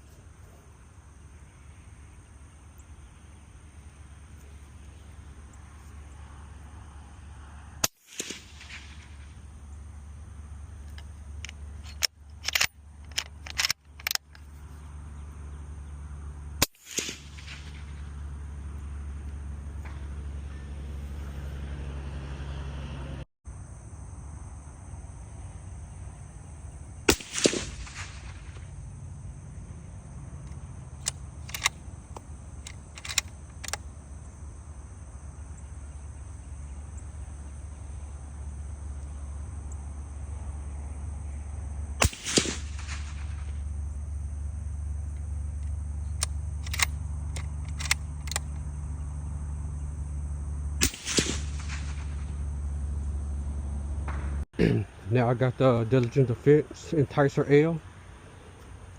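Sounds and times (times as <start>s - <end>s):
suppressed rifle shots: 7.8s - 9.4s, 16.6s - 18.1s, 27.1s - 28.7s, 31.0s - 33.8s, 42.0s - 43.5s, 50.8s - 52.4s
rifle bolt clicks: 11.9s - 14.3s, 30.5s - 33.8s, 46.2s - 48.5s.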